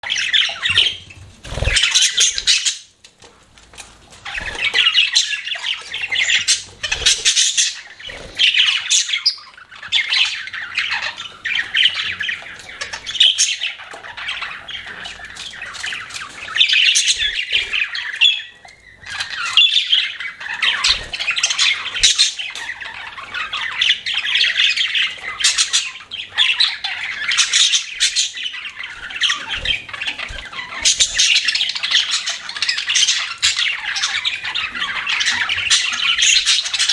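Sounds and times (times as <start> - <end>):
budgerigars chattering and chirping: 0.0 - 36.9
harsh squawks: 4.3 - 12.1.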